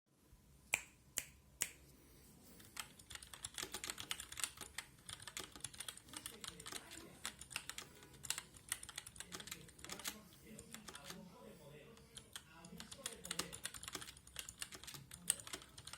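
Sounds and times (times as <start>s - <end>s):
fast typing on keyboard: 2.7s - 11.2s, 12.0s - 15.9s
mechanical keyboard key presses: 2.8s - 11.2s, 12.2s - 15.9s.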